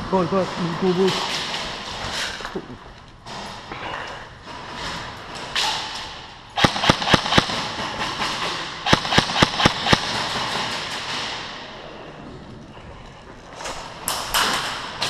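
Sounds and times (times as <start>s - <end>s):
airsoft gun shots: 6.6s - 11.6s.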